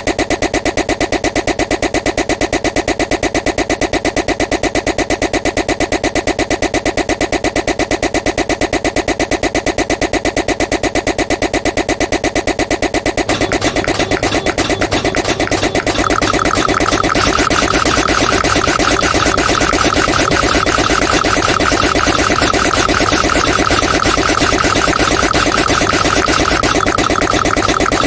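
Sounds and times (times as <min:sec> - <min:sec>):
harsh pulsing electronic noise: 0:13.2 - 0:28.0.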